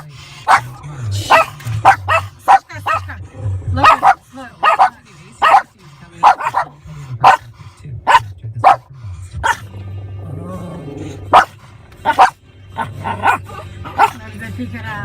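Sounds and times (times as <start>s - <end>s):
dog barking: 0.0s - 3.1s, 3.8s - 9.7s, 11.3s - 14.2s.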